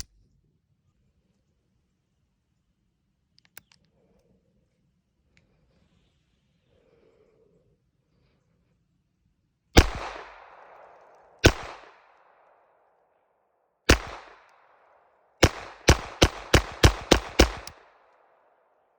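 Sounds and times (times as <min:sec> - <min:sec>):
pistol shots with echo: 0:09.8 - 0:12.7, 0:13.9 - 0:18.6.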